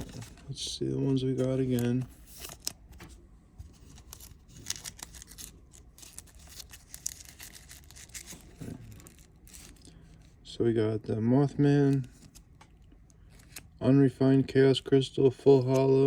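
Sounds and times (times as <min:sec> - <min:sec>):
trading cards clicking and rustling: 0:00.0 - 0:10.2.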